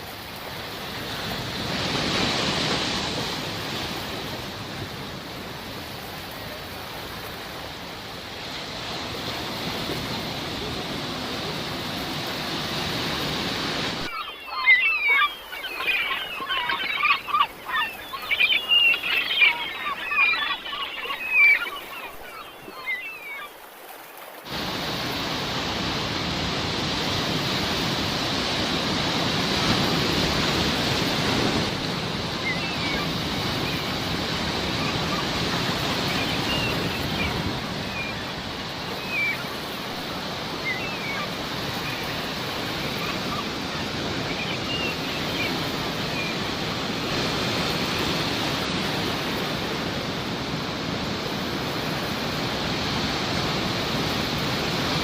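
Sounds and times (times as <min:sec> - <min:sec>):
sea surf washing in: 0:00.0 - 0:55.0
seagull calls: 0:14.0 - 0:23.6, 0:32.2 - 0:47.9.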